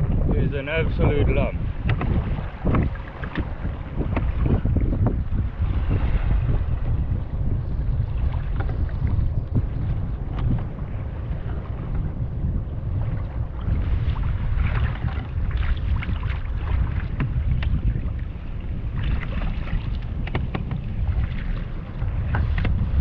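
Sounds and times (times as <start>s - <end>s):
water sloshing against kayak: 0.0s - 23.0s
wind rumbling on microphone: 0.0s - 23.0s
short knocks and splashes: 1.8s - 4.7s, 13.7s - 18.1s, 19.0s - 23.0s.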